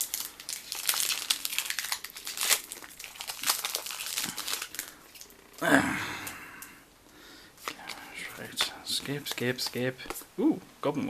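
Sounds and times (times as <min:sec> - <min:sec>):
foil wrapper crinkling: 0:00.0 - 0:05.4.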